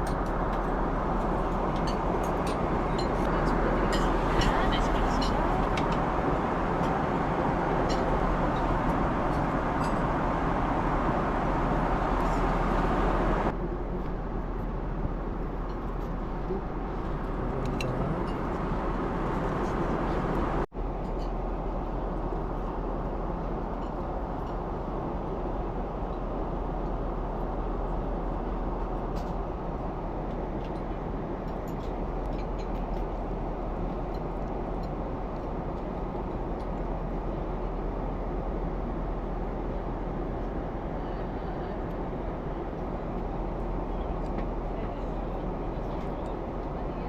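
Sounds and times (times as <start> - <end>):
airliner cabin noise: 0.0 - 20.7
airliner cabin engine roar: 0.0 - 47.0.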